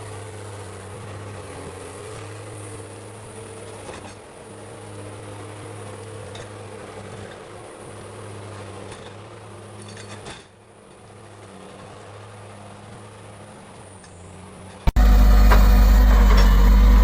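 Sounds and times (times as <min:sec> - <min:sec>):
heavy diesel engine running: 0:00.0 - 0:17.0
metallic clanks: 0:08.8 - 0:11.1, 0:14.0 - 0:17.0.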